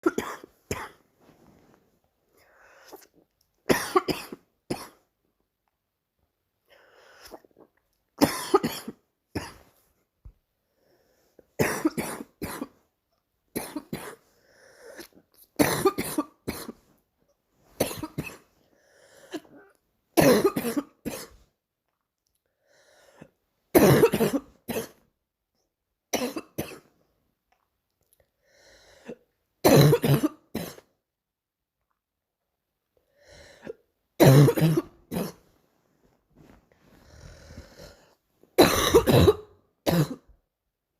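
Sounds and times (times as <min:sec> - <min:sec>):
girl coughing: 0:00.0 - 0:01.0, 0:03.7 - 0:05.0, 0:08.2 - 0:09.7, 0:11.6 - 0:12.8, 0:15.6 - 0:16.8, 0:17.8 - 0:18.5, 0:19.3 - 0:21.4, 0:23.8 - 0:25.0, 0:26.1 - 0:26.9, 0:29.6 - 0:30.9, 0:34.2 - 0:35.4, 0:38.6 - 0:40.3.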